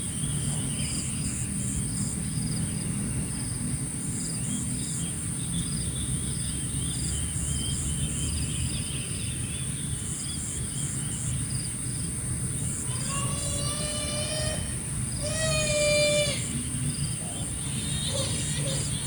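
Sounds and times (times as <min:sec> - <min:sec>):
high insect drone: 0:10.0 - 0:19.0
long high-pitched call: 0:12.9 - 0:16.7
bird warbling: 0:12.9 - 0:19.0.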